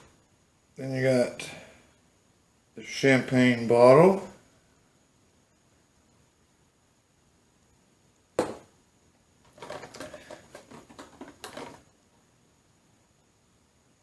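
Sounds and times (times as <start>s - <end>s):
plastic packaging crinkling: 9.5s - 11.9s.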